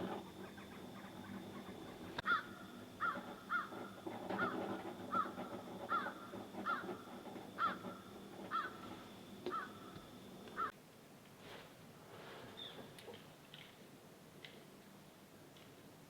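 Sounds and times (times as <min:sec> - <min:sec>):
bird calling: 0:00.0 - 0:10.7.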